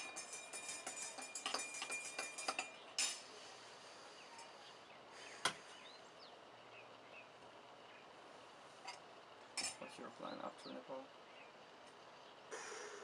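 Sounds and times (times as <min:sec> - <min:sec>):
cutlery clinking on dishes: 0:00.0 - 0:03.3.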